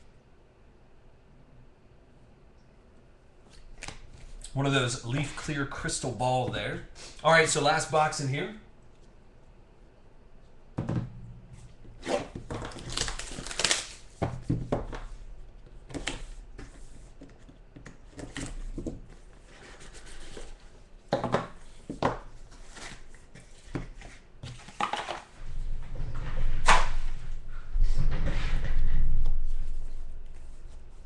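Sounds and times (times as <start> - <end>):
packaging ripping and crinkling: 12.1 - 14.2.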